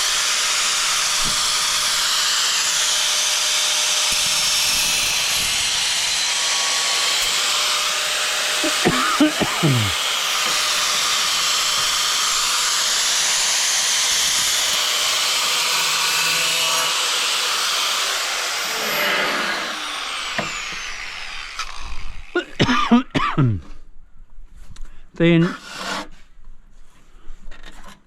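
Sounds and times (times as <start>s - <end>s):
angle grinder grinding tile: 0.0s - 22.3s.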